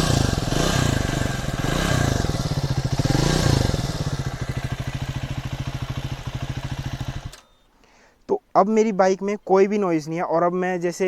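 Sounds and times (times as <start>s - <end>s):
motorcycle engine revving: 0.0s - 7.4s.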